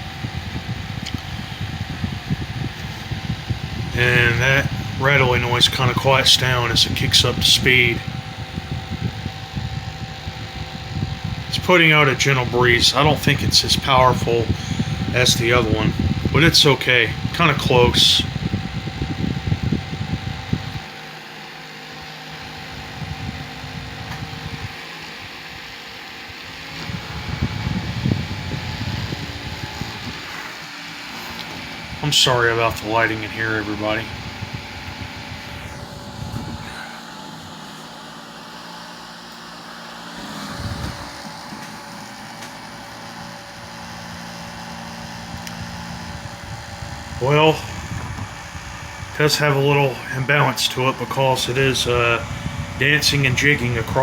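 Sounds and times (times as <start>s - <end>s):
low buffeting rumbles: 0.0s - 20.9s, 22.4s - 37.8s, 40.1s - 54.0s
fan shifting on floor: 0.0s - 21.2s, 21.9s - 54.0s
table fan whirring: 0.0s - 54.0s.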